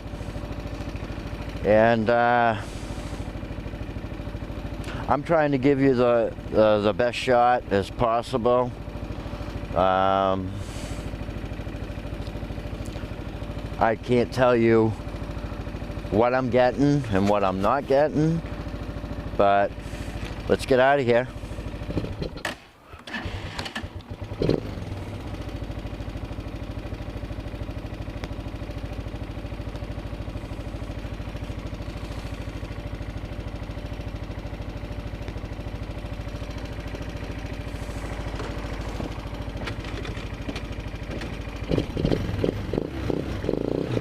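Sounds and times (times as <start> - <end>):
atv engine running: 0.0 - 44.0
knocks and clatter: 38.3 - 42.5.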